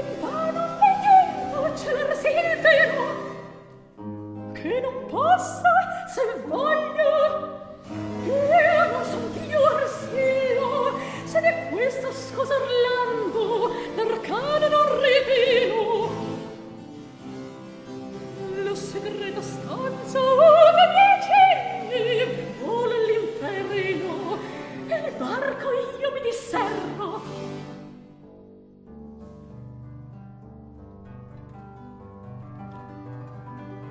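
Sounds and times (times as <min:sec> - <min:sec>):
soprano singing opera: 0:00.0 - 0:03.7, 0:04.6 - 0:16.5, 0:18.4 - 0:27.6
string orchestra: 0:00.0 - 0:03.7, 0:06.1 - 0:28.0.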